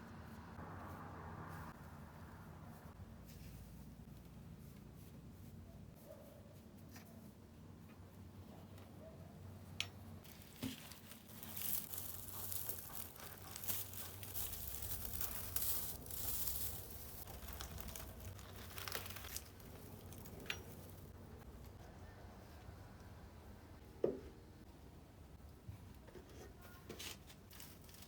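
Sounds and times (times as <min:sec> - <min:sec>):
crinkling and rustling: 0:10.2 - 0:21.8, 0:25.7 - 0:28.0.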